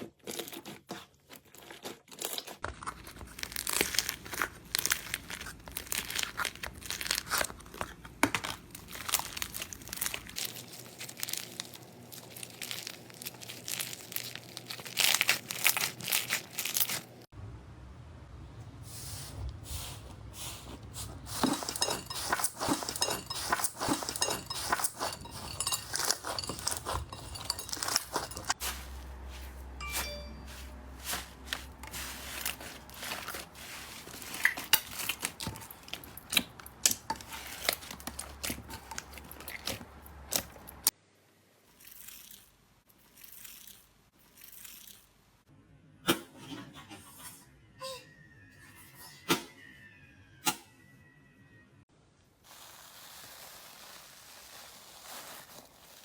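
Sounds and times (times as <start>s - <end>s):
slime crackling and popping: 52.4s - 56.0s.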